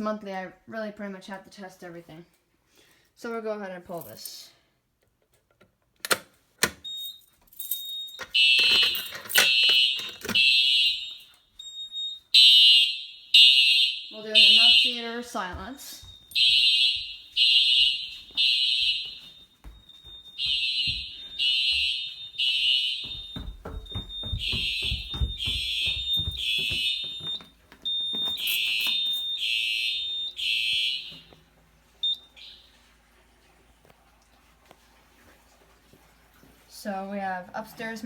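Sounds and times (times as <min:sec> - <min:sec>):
fire alarm horns blasting: 0:07.8 - 0:31.4, 0:32.0 - 0:32.8
low thumps: 0:23.0 - 0:27.4.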